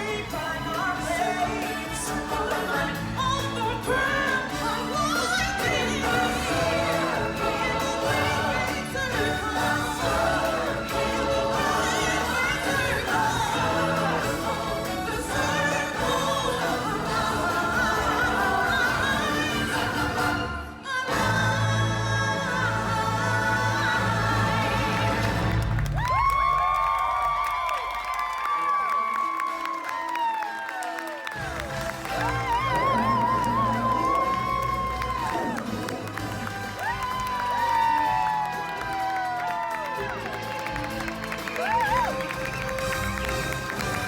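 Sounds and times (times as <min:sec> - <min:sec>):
choir singing: 0:00.0 - 0:25.8
instrumental backing music: 0:00.0 - 0:25.9, 0:31.3 - 0:44.0.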